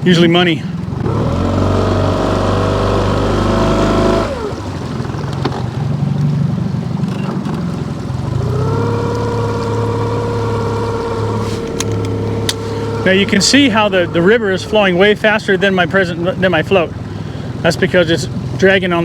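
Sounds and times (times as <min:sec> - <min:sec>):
outboard motor throttling: 0:00.0 - 0:19.0.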